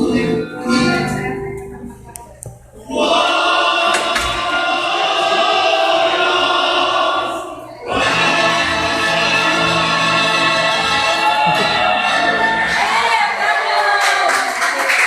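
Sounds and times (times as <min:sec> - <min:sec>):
group of voices singing: 0:02.8 - 0:14.3.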